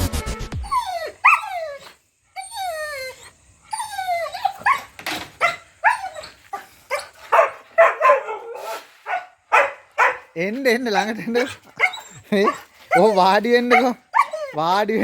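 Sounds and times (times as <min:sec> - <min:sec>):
dog yipping and barking: 0:00.6 - 0:01.9, 0:02.8 - 0:10.4, 0:11.4 - 0:14.6
dog whining: 0:00.6 - 0:07.2, 0:11.8 - 0:14.6.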